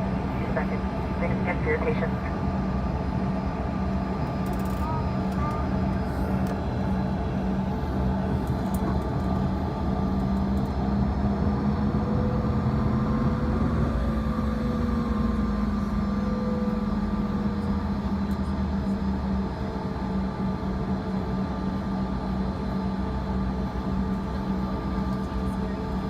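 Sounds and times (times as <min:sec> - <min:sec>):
jet engines idling drone: 0:00.0 - 0:26.0.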